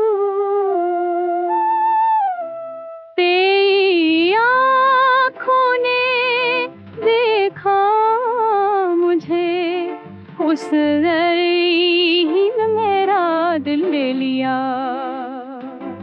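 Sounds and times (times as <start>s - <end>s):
soft musical accompaniment: 0.0s - 16.0s
woman singing wordless melody: 3.2s - 15.8s.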